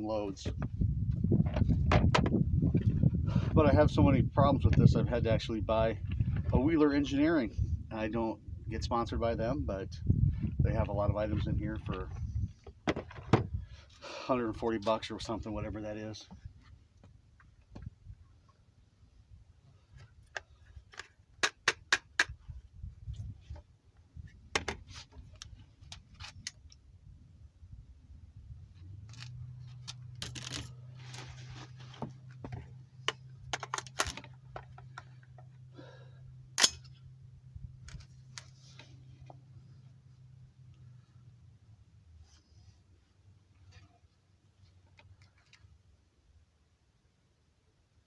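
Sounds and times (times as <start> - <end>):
metallic clicks of rifle handling: 36.6 - 37.0.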